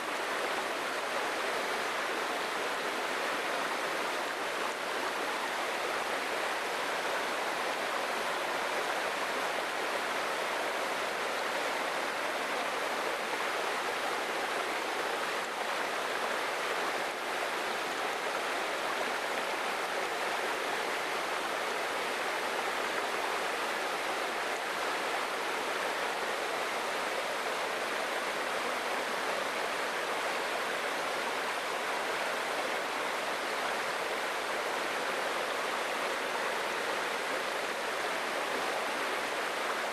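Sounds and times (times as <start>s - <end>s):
waterfall and stream rushing: 0.0s - 39.9s.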